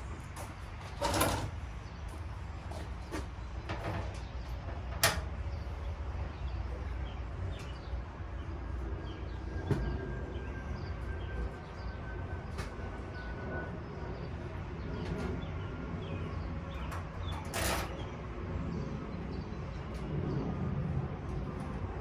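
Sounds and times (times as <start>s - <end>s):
steady low rumble: 18.0s - 22.0s.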